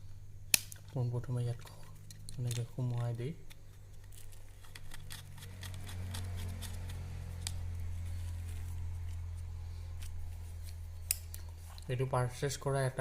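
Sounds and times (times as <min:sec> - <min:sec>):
plastic parts clicking and rattling: 0:00.7 - 0:07.6.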